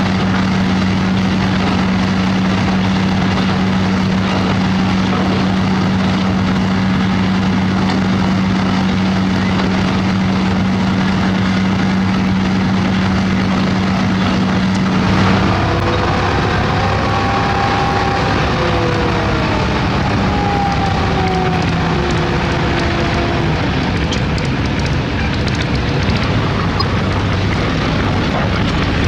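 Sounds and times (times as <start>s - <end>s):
diesel machinery engine hum: 0.0s - 29.0s.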